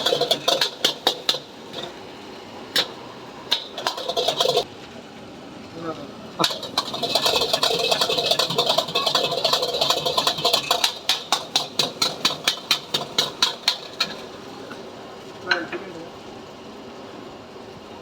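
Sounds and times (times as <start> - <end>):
metal spatula clacking against wok: 0.0 - 2.0, 2.8 - 4.7, 6.4 - 14.4
frying hiss: 0.0 - 4.9, 5.7 - 17.1.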